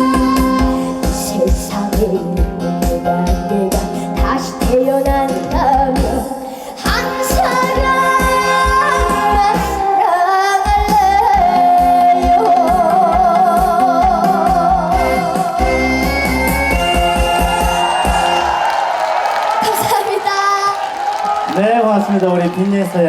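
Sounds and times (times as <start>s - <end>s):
girl singing: 0.0s - 17.5s.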